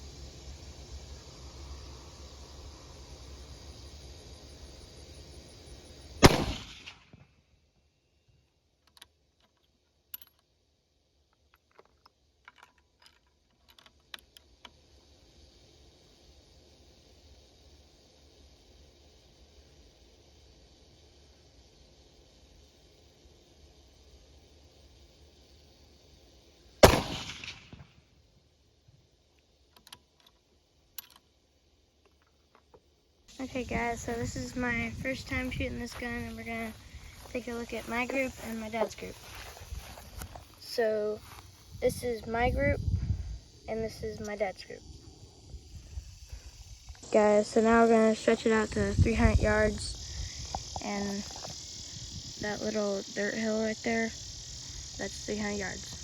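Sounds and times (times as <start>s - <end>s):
rifle shot with echo: 6.2s - 7.0s, 26.8s - 27.9s
faint scattered clicks: 8.4s - 10.5s, 11.3s - 14.8s, 29.3s - 31.3s.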